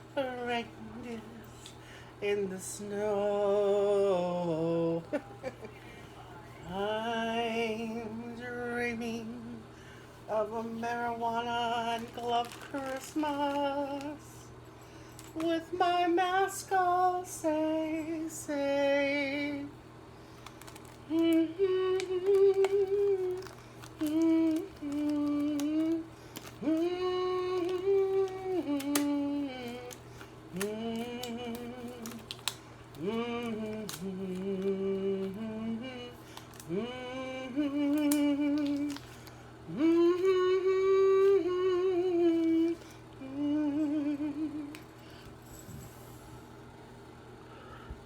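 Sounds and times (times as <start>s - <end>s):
woman humming a melody: 21.1s - 32.3s, 33.0s - 39.0s, 39.7s - 44.8s.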